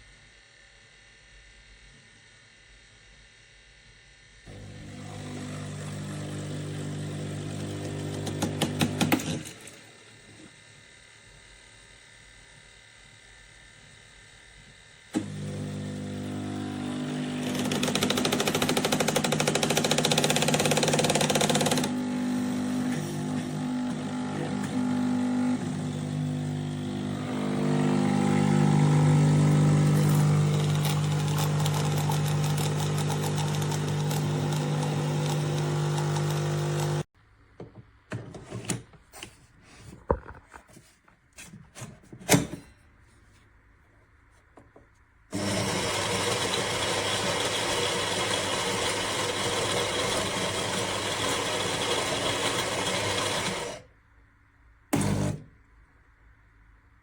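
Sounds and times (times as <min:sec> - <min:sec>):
espresso machine buzzing hum: 0:04.2 - 0:37.1, 0:45.3 - 0:53.9
espresso machine hissing: 0:04.5 - 0:09.1, 0:15.2 - 0:37.1.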